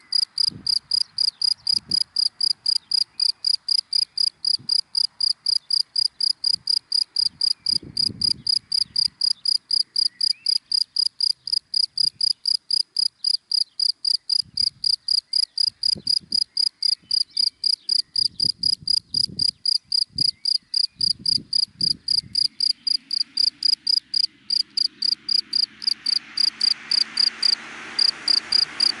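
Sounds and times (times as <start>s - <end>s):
cricket chirping: 0.0s - 29.0s
passing car rushing: 21.8s - 29.0s.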